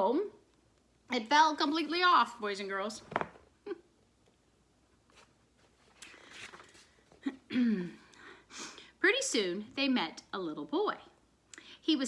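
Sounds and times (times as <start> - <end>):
paper page turning: 5.0 - 7.2.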